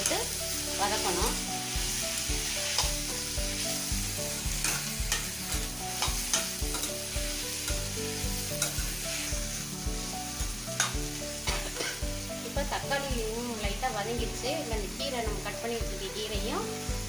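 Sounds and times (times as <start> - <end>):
vegetables sizzling in oil: 0.0 - 17.0
spoon scraping a pan: 1.1 - 3.0, 4.4 - 7.9, 8.5 - 9.3, 10.8 - 12.1.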